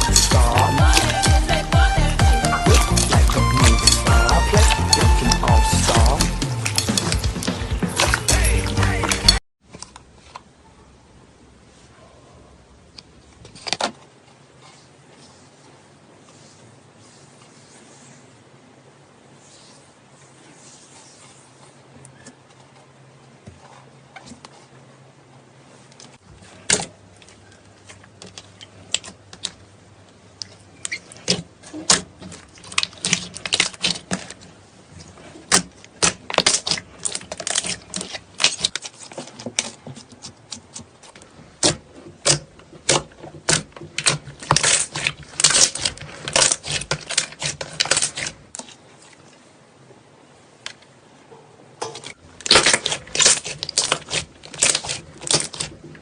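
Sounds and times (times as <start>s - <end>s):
slime crackling and popping: 35.5s - 39.8s, 41.6s - 48.3s, 52.4s - 55.7s.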